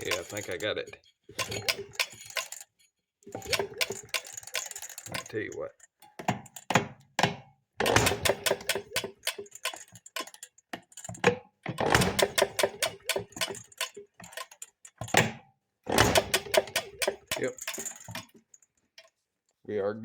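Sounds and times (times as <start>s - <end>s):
rapid sharp clicking of engine: 1.4s - 2.6s, 3.3s - 5.4s, 7.8s - 10.9s, 11.8s - 15.2s, 15.9s - 18.5s.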